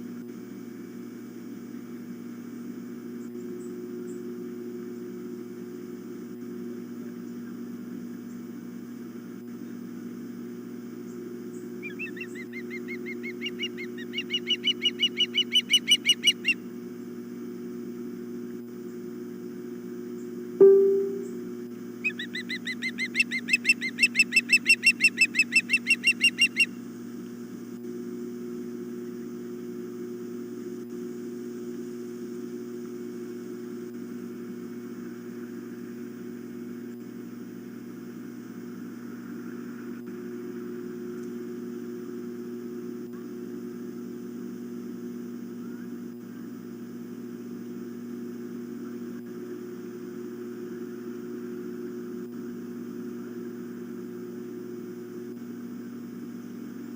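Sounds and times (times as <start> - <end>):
osprey piping chirps: 11.8 - 16.6, 22.1 - 26.7.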